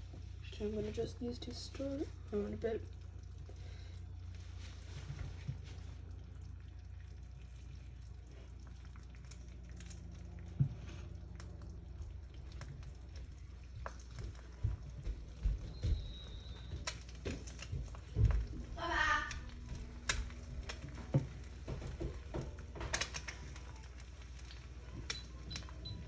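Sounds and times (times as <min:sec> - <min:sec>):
food frying in a pan: 0:00.0 - 0:25.8
low steady hum: 0:00.0 - 0:26.0.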